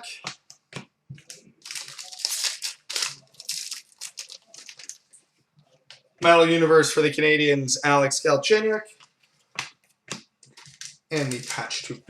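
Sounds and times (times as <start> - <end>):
foil wrappers crinkling: 1.2 - 5.2, 10.5 - 11.9.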